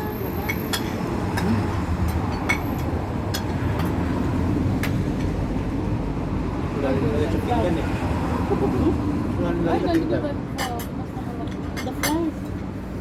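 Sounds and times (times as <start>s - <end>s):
restaurant low rumble: 0.0s - 7.7s
cutlery and dishes clinking: 0.4s - 4.0s, 9.9s - 12.6s.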